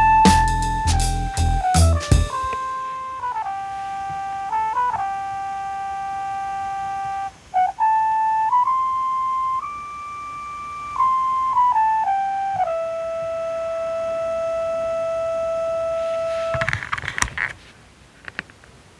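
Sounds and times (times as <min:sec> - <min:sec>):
synthesizer flute-like melody: 0:00.0 - 0:16.6
clicks and knocks handling gear: 0:16.5 - 0:18.7.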